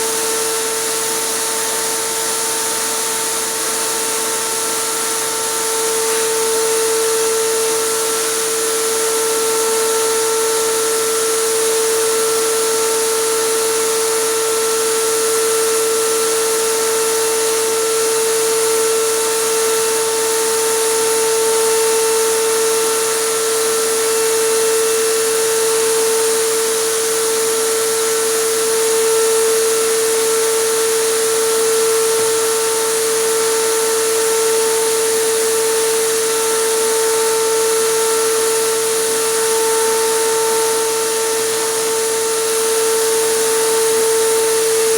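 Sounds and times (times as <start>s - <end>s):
air compressor humming: 32.4s - 44.9s.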